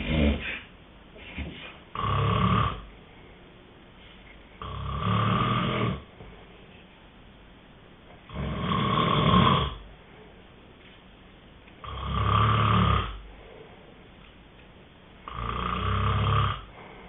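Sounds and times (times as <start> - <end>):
person snoring: 0.0 - 0.7, 1.9 - 2.9, 4.6 - 6.1, 8.3 - 9.8, 11.8 - 13.3, 15.2 - 17.0.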